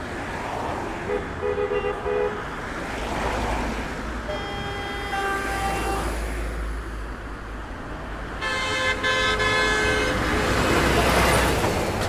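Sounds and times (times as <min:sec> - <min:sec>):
street traffic passing: 0:00.0 - 0:12.0
held car horn: 0:01.1 - 0:02.4, 0:04.3 - 0:06.2, 0:08.4 - 0:11.0
car horn toots: 0:04.3 - 0:06.2, 0:08.4 - 0:10.9.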